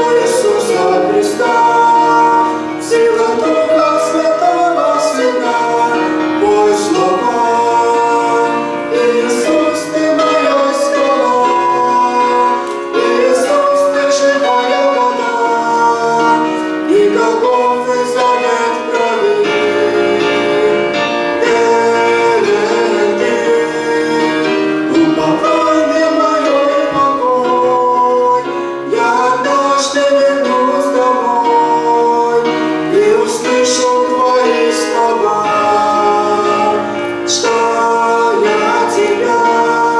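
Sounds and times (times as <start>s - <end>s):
choir singing a hymn: 0.0s - 39.9s
instrumental accompaniment: 0.0s - 39.9s.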